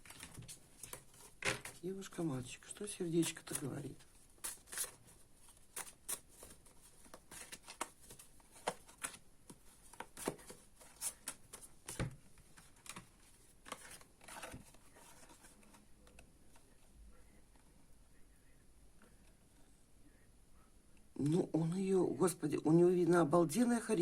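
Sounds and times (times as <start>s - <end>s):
cards being shuffled and laid out: 0.0s - 2.2s, 3.2s - 15.8s.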